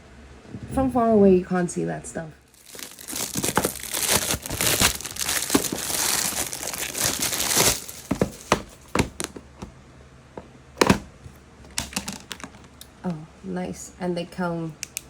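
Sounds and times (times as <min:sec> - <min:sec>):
plastic bag crinkling and tearing: 0:02.5 - 0:09.3.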